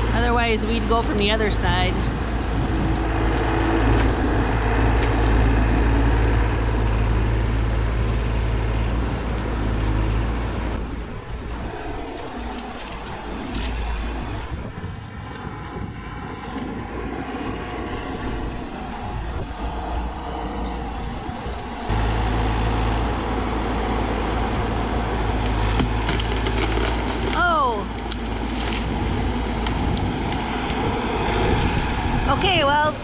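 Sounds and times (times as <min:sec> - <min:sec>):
excavator diesel engine running: 0:00.0 - 0:12.4, 0:18.8 - 0:32.0.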